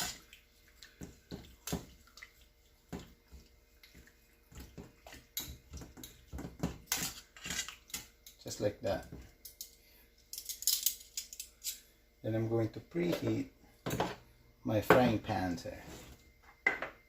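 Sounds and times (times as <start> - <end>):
water sloshing and splashing: 0.0 - 7.9.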